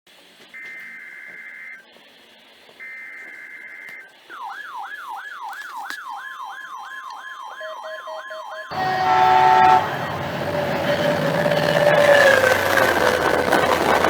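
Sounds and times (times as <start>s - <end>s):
noise with steady tones: 0.1s - 14.0s
siren-like alert sweeps: 2.8s - 13.2s
high two-tone warble: 7.5s - 13.1s.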